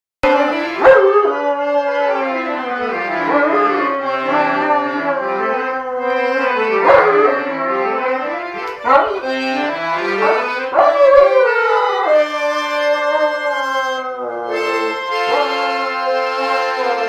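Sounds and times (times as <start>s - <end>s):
accordion chords: 0.2s - 17.0s
dog howling: 0.3s - 8.2s, 8.8s - 9.2s, 10.2s - 17.0s
dog's sharp cry: 10.2s - 11.4s.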